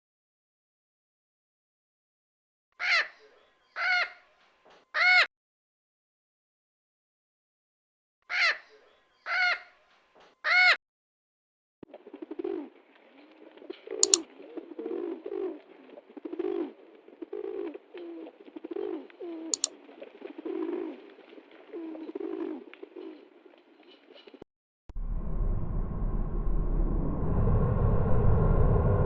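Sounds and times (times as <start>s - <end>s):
pigeons cooing: 11.9s - 24.4s
sharp clicks: 14.0s - 14.2s.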